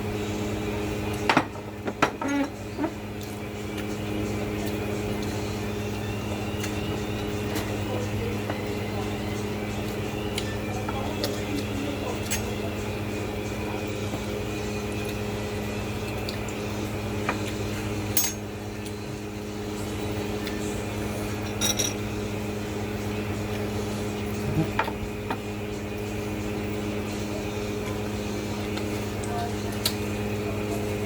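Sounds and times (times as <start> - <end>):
low electrical hum: 0.0 - 31.0
dishes and utensils clinking: 18.2 - 18.5, 21.4 - 22.0.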